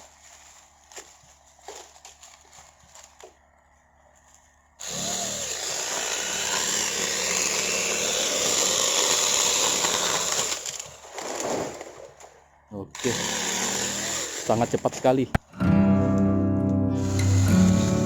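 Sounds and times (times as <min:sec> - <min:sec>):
electric chainsaw cutting wood: 0:04.8 - 0:11.5, 0:13.0 - 0:15.1, 0:17.0 - 0:18.0.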